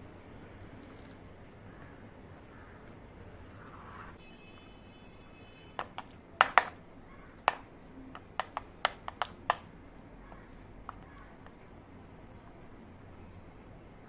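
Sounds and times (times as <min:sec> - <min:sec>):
toy kitchen pieces clicking: 0:05.8 - 0:06.8, 0:07.4 - 0:09.7, 0:10.8 - 0:11.6.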